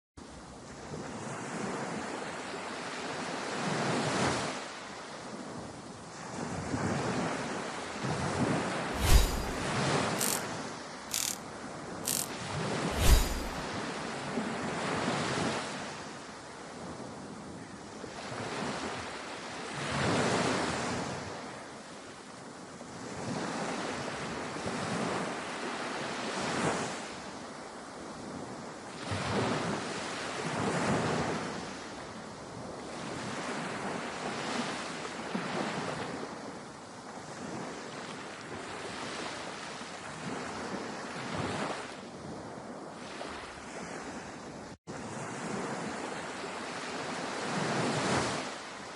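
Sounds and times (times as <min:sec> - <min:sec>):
ocean waves breaking: 0:08.8 - 0:11.4, 0:12.1 - 0:14.0.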